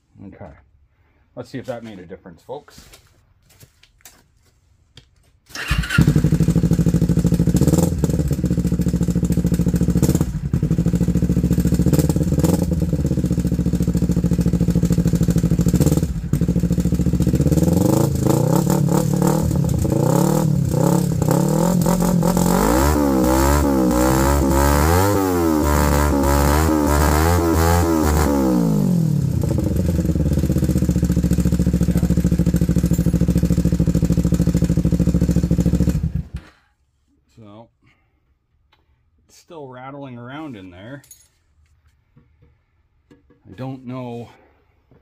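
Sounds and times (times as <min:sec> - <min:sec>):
motorcycle engine idling and revving: 0:05.6 - 0:36.5
rattle inside muffler: 0:06.0 - 0:36.7.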